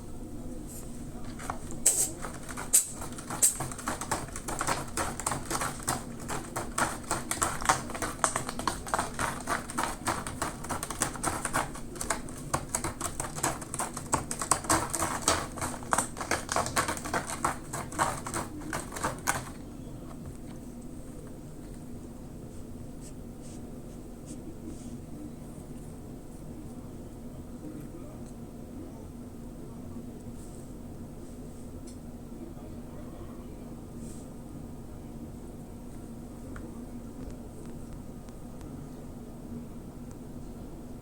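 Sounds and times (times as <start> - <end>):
cat clawing at a scratcher: 1.3 - 19.6.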